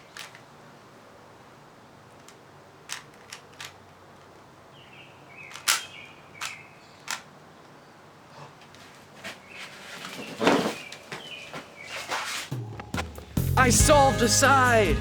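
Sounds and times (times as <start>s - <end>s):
puzzle cube plastic clicks: 0.0s - 0.6s, 2.0s - 4.4s, 5.4s - 7.4s.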